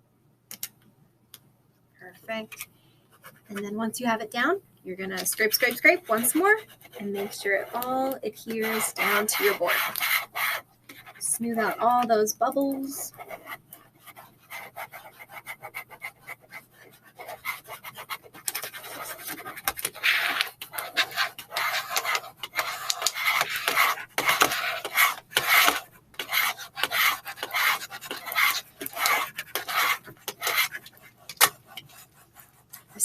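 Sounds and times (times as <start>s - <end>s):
hard edge scraping tape on board: 17.3s - 31.9s.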